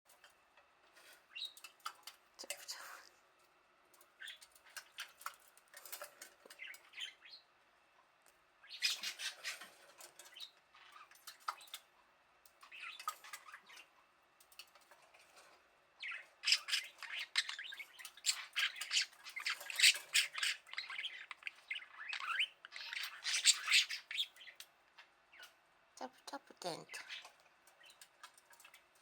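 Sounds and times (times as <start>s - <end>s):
bird chirping: 8.6s - 11.8s, 16.0s - 28.8s.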